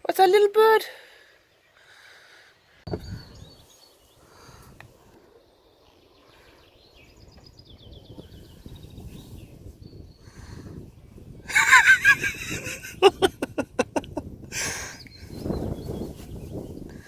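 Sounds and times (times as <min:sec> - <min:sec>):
songbird chirping and trilling: 0:02.6 - 0:12.9, 0:14.9 - 0:17.0.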